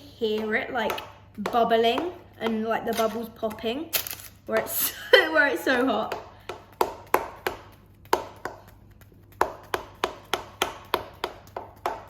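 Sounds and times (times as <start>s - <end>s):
utensil knocking on hard surface: 0.2s - 3.6s.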